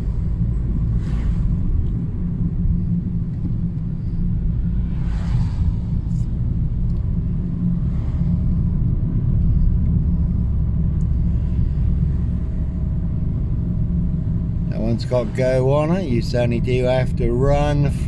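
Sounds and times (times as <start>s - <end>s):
low rumble of car traffic: 0.0s - 18.0s.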